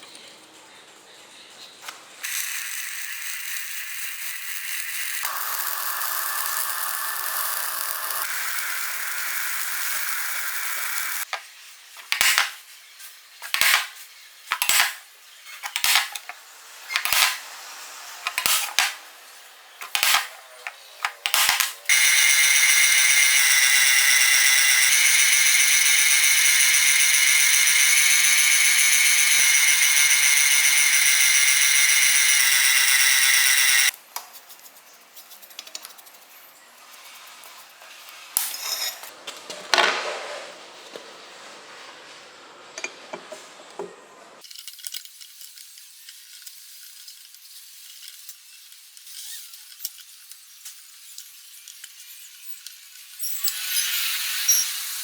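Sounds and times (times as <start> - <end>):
power tool whining: 21.0 - 33.9.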